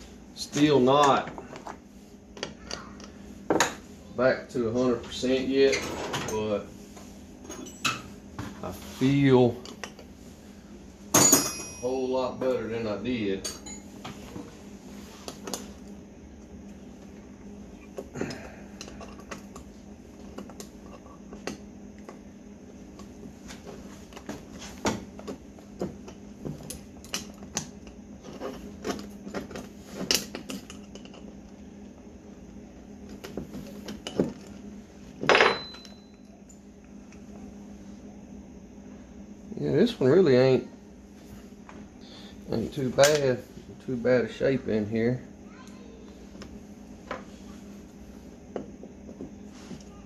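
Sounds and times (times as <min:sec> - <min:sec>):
steady low hum: 0:00.0 - 0:50.0
metal parts and tools clinking: 0:11.2 - 0:12.0.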